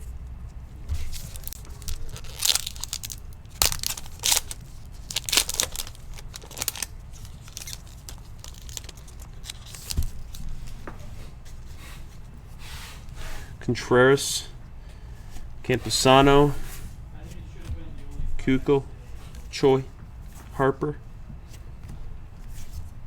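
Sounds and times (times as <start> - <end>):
card pack wrapper tearing and crinkling: 1.0 - 10.6.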